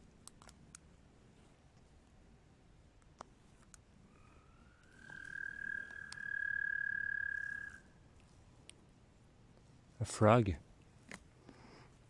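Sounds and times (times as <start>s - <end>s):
frog trilling: 4.1s - 7.9s.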